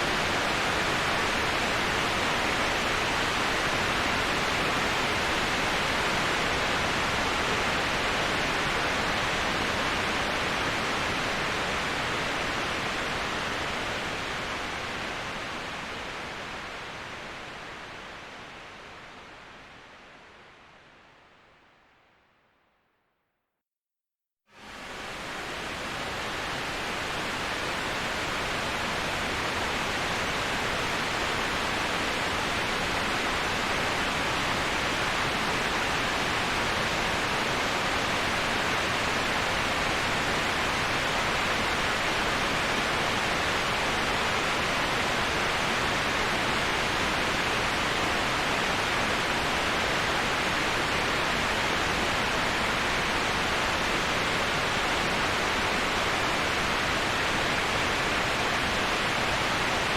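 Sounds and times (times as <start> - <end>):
waterfall rushing: 24.6 - 59.9.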